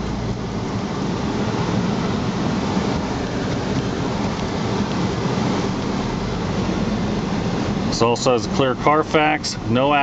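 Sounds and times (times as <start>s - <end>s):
car road and tyre noise: 0.0s - 10.0s.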